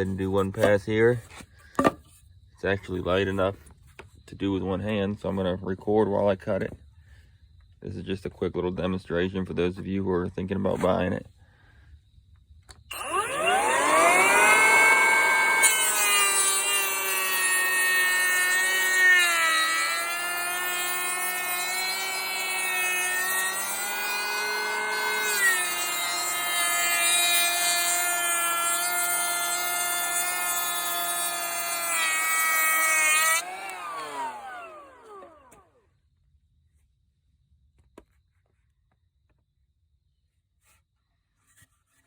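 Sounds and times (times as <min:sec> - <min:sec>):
planer cutting hiss: 0:12.9 - 0:35.7
electric planer motor whine: 0:12.9 - 0:35.8.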